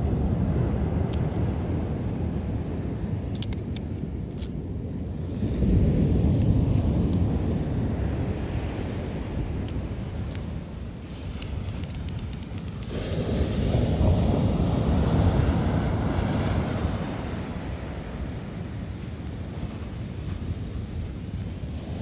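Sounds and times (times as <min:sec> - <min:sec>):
faint campfire crackles: 0:00.5 - 0:21.6
sea waves breaking on beach: 0:05.4 - 0:22.0.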